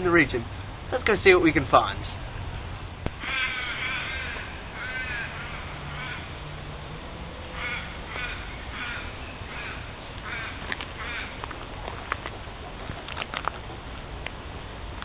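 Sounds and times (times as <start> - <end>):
crows cawing: 3.2 - 6.4, 7.5 - 11.6.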